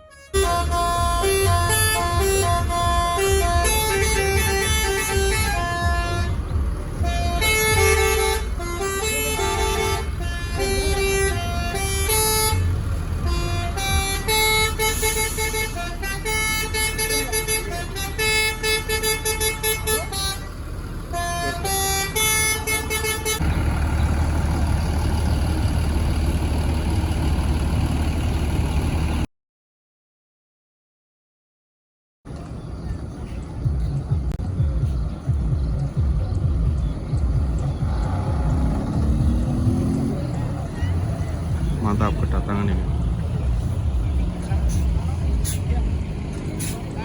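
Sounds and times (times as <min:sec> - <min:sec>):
multi-tone air horns playing tunes: 0:00.0 - 0:20.5, 0:21.1 - 0:23.4
bus engine rumble: 0:00.0 - 0:29.3, 0:32.3 - 0:47.0.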